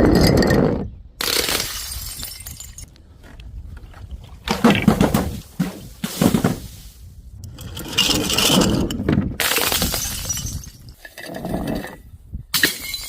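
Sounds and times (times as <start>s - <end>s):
glass crunching: 1.2s - 2.9s, 9.4s - 11.0s
glass shattering: 1.3s - 2.9s, 9.4s - 11.0s, 12.6s - 13.0s.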